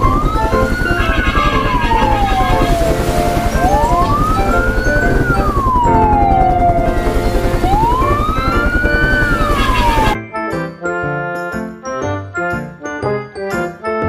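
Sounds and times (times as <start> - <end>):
emergency vehicle siren wailing: 0.0 - 10.2
music with fast pulsing beat: 0.0 - 10.2.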